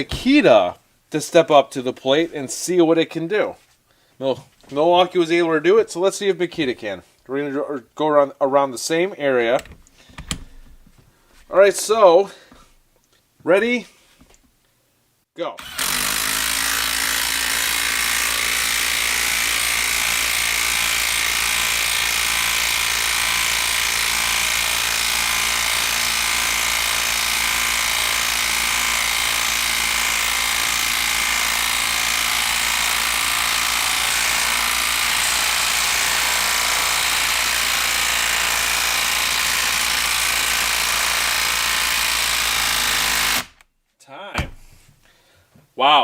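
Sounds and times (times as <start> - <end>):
impact driver hammering: 15.6 - 43.6.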